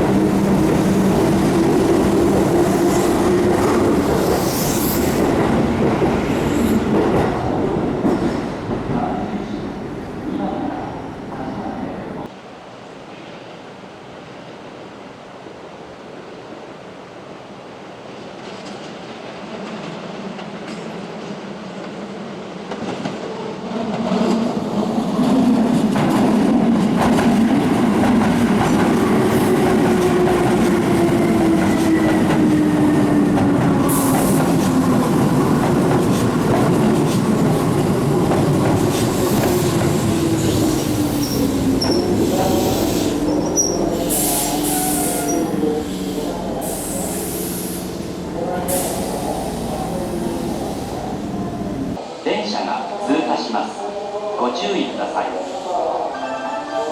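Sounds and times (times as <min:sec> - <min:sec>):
electric train arriving: 0:00.0 - 0:12.4, 0:24.3 - 0:56.9.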